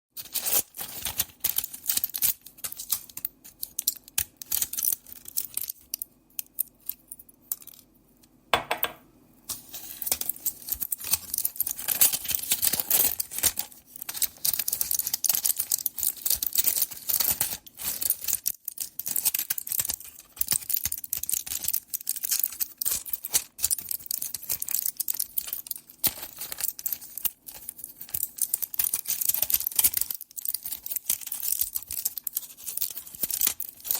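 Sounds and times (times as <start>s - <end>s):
crinkling: 0.2s - 8.3s, 9.5s - 33.9s
pill tablets clicking and rattling: 10.0s - 33.9s.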